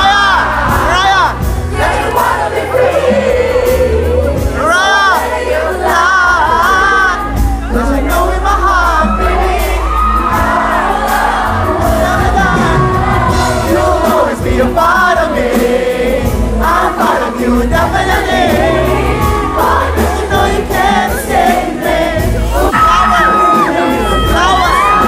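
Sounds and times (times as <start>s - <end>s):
backing singers: 0.0s - 25.0s
crowd noise: 0.0s - 25.0s
lead singer's voice: 0.0s - 25.0s
live band playing: 0.0s - 25.0s.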